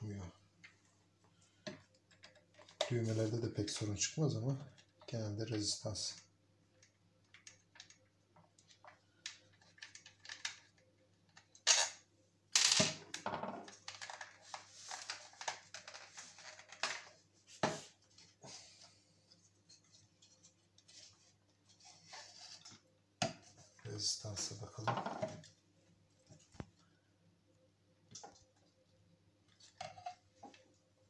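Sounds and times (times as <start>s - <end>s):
plastic and metal parts handled: 7.3s - 12.0s, 12.6s - 22.8s.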